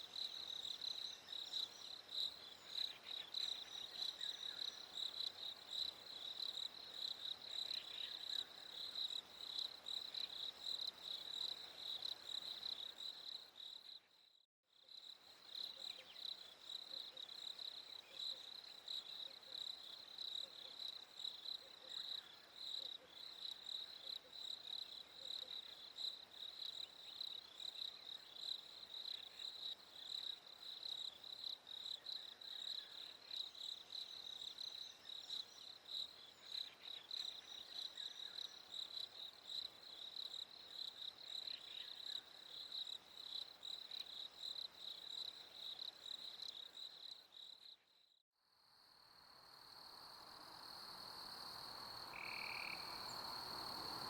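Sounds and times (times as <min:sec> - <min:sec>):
night insect chorus: 0:00.0 - 0:14.2, 0:14.8 - 0:54.0
crickets chirping: 0:14.9 - 0:47.9, 0:48.5 - 0:54.0.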